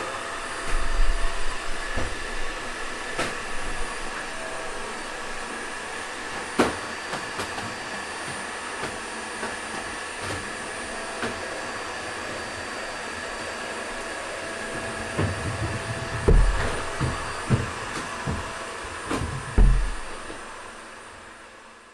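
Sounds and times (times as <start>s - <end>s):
vacuum cleaner whining: 0.0s - 21.9s.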